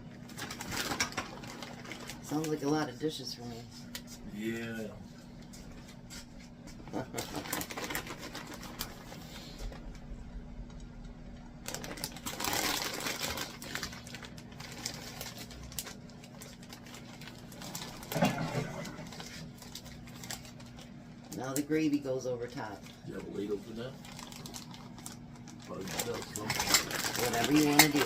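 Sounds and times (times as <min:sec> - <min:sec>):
low hum: 0:06.7 - 0:27.3.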